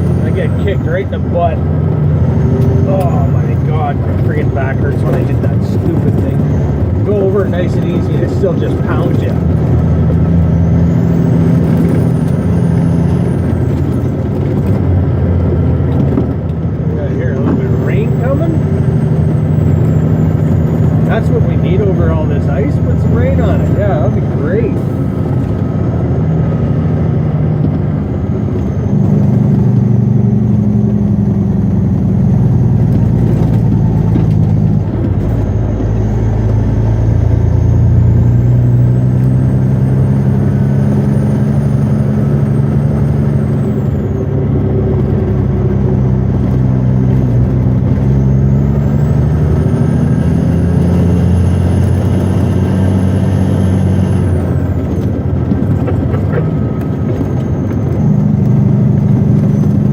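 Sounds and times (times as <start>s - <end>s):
truck diesel engine under load: 0.0s - 59.9s.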